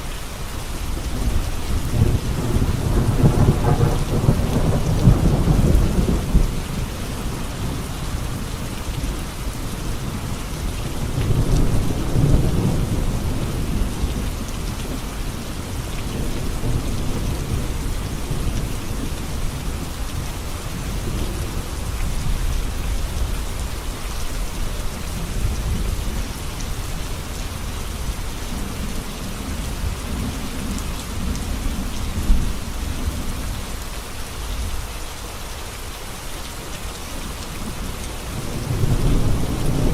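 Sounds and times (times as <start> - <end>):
heavy rain on road: 0.0 - 39.9
thunder rumbling: 1.0 - 9.2, 38.4 - 39.9.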